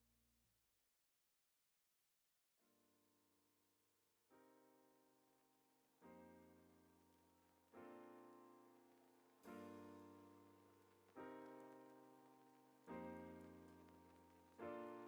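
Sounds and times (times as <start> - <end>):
soft piano chords: 4.3 - 15.0.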